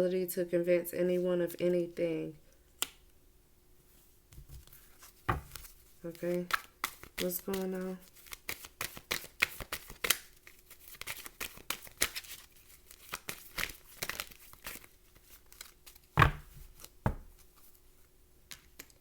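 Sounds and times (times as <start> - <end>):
cards being shuffled: 4.4 - 17.7
thumps: 5.3 - 5.6, 16.2 - 17.4.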